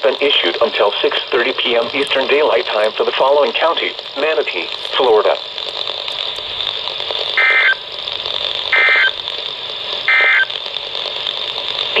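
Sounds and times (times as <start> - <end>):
radio hiss: 0.0 - 12.0
digital data tone bursts: 7.4 - 7.8, 8.7 - 9.2, 10.1 - 10.5.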